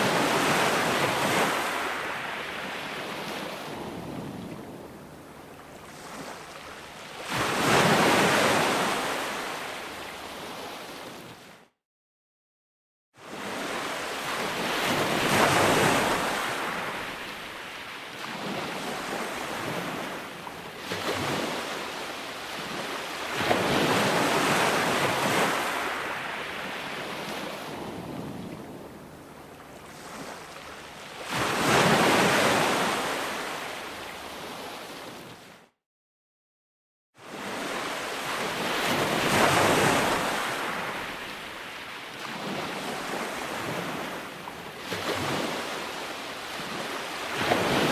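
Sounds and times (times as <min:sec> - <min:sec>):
ocean waves surging: 0:37.4 - 0:44.2.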